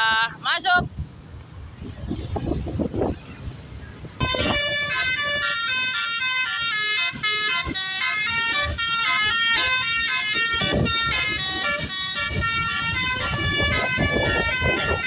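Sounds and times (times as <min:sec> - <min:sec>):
musical air horn playing tune: 0:04.2 - 0:15.0.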